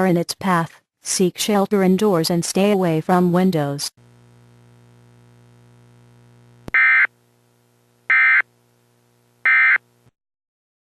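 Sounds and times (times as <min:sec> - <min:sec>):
digital data tone bursts: 0:08.1 - 0:08.4.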